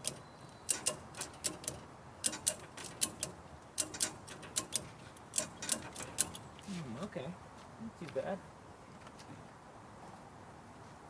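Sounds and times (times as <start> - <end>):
ratchet strap clicking: 0.0 - 6.5.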